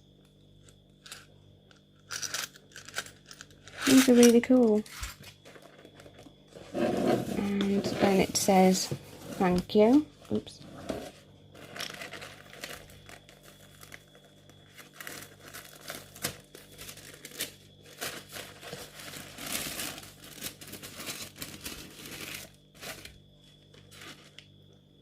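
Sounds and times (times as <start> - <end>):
packaging rustling and crackling: 11.6 - 24.5.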